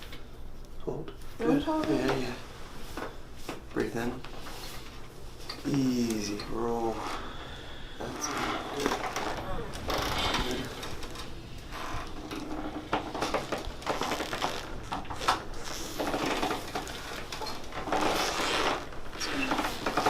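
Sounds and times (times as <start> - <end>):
treatment table clicks and creaks: 8.0 - 20.0
clothing rustling: 8.1 - 20.0.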